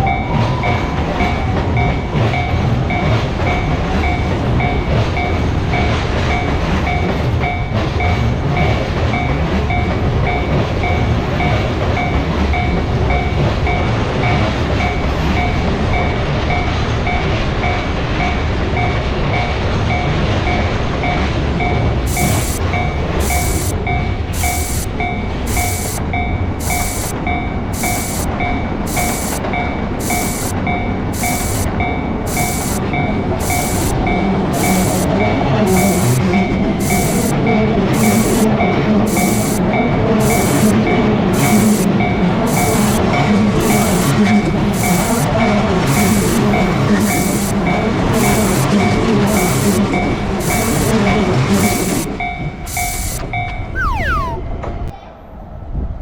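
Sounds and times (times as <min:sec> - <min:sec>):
railroad crossing bell clanging: 0:00.0 - 0:45.7, 0:46.5 - 0:53.7
passing train rumble: 0:00.0 - 0:52.7
short hissing tick: 0:22.1 - 0:26.0, 0:26.6 - 0:27.2, 0:27.8 - 0:34.0, 0:34.6 - 0:35.2, 0:35.8 - 0:36.2, 0:36.8 - 0:37.4, 0:38.0 - 0:38.5, 0:39.1 - 0:39.6, 0:40.2 - 0:53.2.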